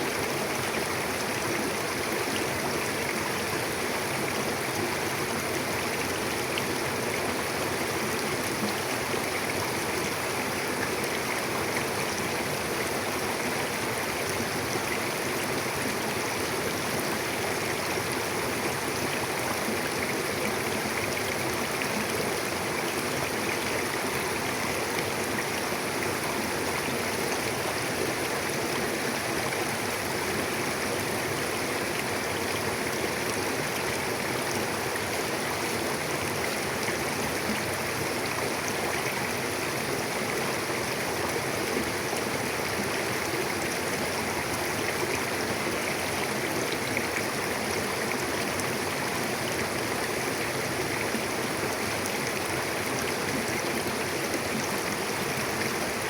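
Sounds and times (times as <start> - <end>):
river flowing over rocks: 0.0 - 56.0.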